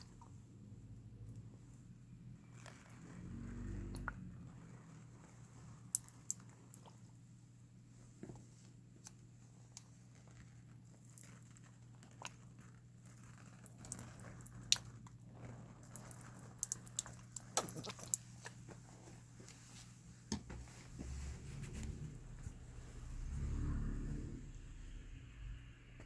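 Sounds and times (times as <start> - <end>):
steady low hum: 19.2 - 26.0.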